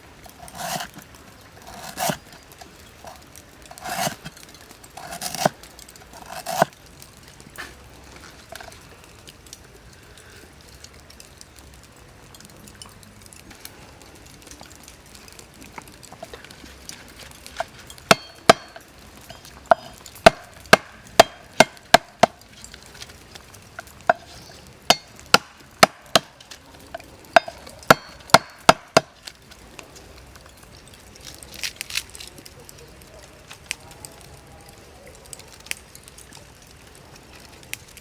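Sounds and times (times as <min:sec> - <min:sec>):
blade chopping wood: 0:00.3 - 0:02.2, 0:03.7 - 0:04.4, 0:05.0 - 0:06.7, 0:17.6 - 0:18.8, 0:19.7 - 0:22.5, 0:24.9 - 0:26.4, 0:27.4 - 0:29.2.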